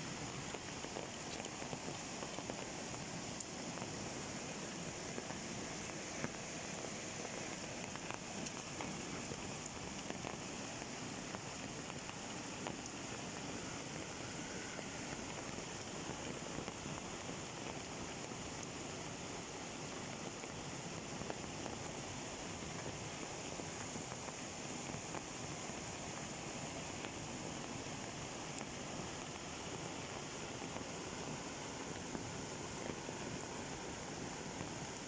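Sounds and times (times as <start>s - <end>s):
rain patter: 0.0s - 35.0s.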